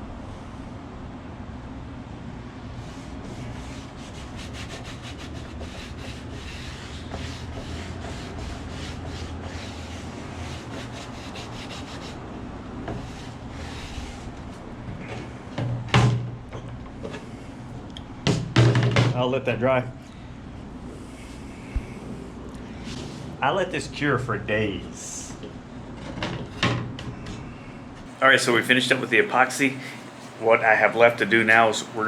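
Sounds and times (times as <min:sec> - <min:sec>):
steady low hum: 0:00.0 - 0:32.0
hand rubbing wooden board: 0:02.8 - 0:12.2, 0:12.9 - 0:15.4, 0:28.5 - 0:32.0.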